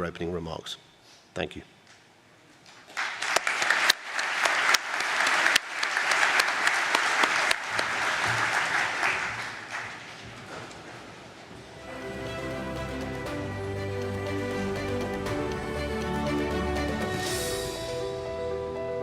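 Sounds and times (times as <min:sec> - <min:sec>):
audience applauding: 0:02.8 - 0:10.4.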